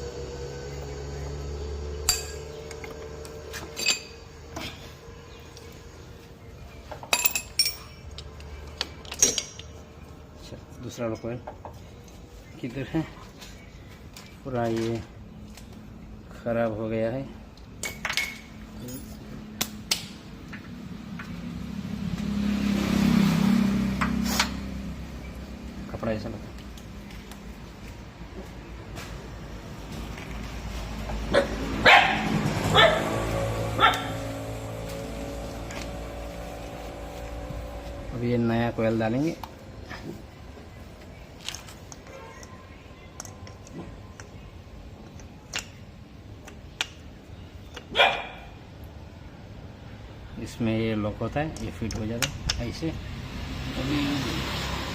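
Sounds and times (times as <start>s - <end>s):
vehicle engine revving: 0.0s - 3.8s, 20.8s - 26.4s, 30.6s - 40.2s, 52.6s - 54.9s
sharp metal clinks: 2.0s - 2.6s, 3.7s - 4.3s, 7.1s - 8.2s.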